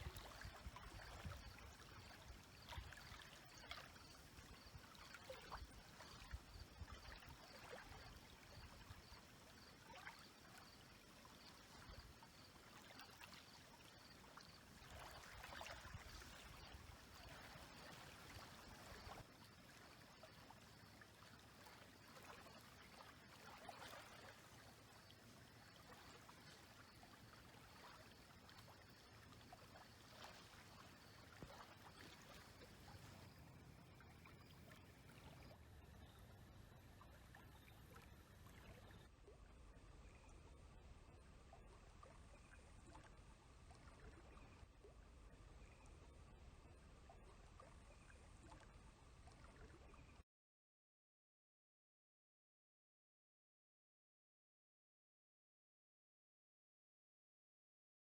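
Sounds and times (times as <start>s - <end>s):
lake waves lapping on shore: 0.0s - 35.5s.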